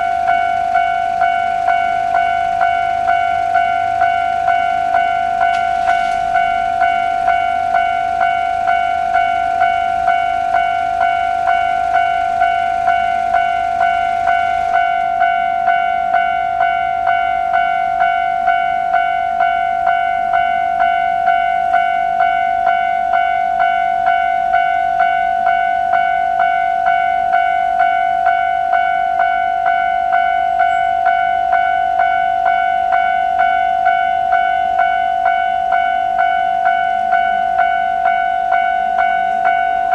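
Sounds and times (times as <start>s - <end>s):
level-crossing alarm dinging: 0.0s - 39.9s.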